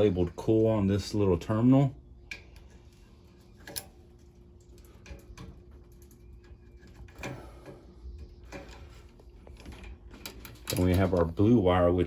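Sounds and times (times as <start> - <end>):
faint steady hum: 0.0 - 12.0
wires clicking and rustling: 2.2 - 11.7.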